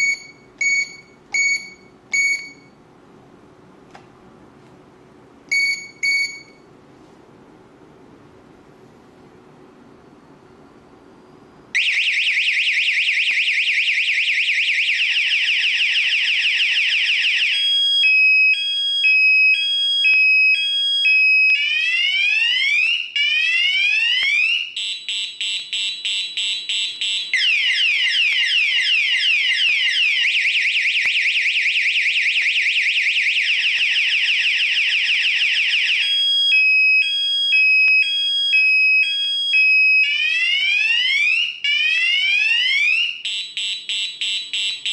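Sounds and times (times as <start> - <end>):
electronic alarm siren: 0.0 - 2.8, 11.7 - 44.9.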